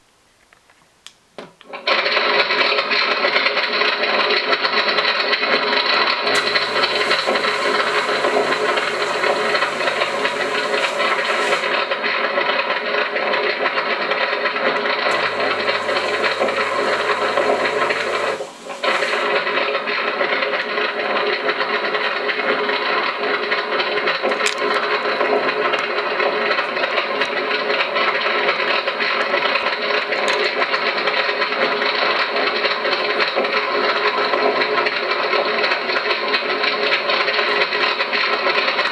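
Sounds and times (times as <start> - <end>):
high hiss with low hum: 6.3 - 11.9, 15.1 - 19.6.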